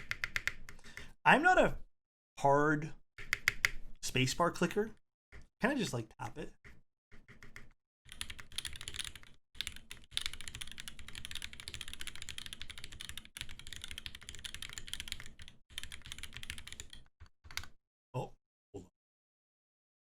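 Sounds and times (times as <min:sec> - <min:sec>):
fast typing on mechanical keyboard: 0:00.0 - 0:00.8, 0:03.2 - 0:03.8, 0:07.1 - 0:17.8.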